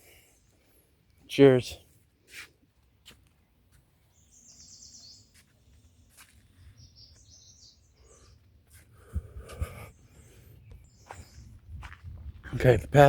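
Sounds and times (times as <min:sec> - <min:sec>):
high bird chirps: 0:04.2 - 0:05.4, 0:06.6 - 0:08.4.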